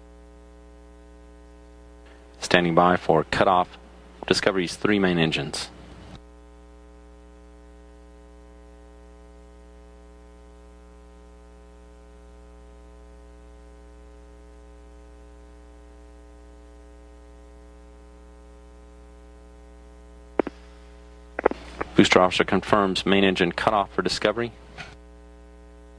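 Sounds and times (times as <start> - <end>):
electrical mains hum: 0.0 - 25.9
light hiss: 20.4 - 22.1.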